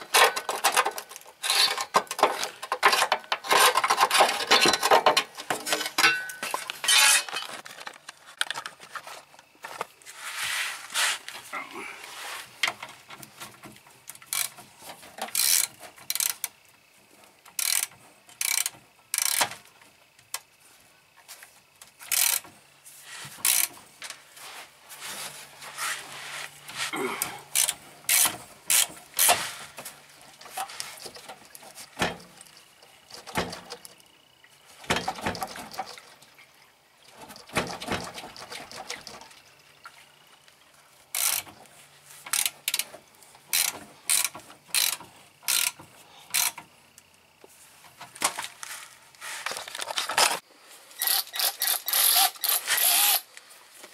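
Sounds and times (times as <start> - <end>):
metallic clanks of hand tools: 0.0 - 7.6
ratchet wrench clicking: 14.3 - 14.5, 15.3 - 16.5, 17.6 - 19.5, 22.1 - 22.4, 23.4 - 23.7, 27.5 - 29.4, 41.2 - 41.5, 42.3 - 42.9, 43.5 - 46.6, 51.0 - 53.3.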